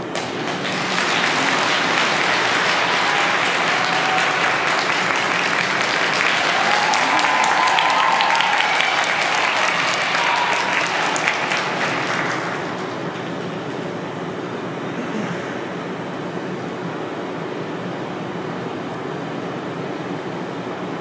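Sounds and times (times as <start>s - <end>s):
crowd cheering: 0.0s - 14.0s
audience applauding: 0.0s - 14.1s.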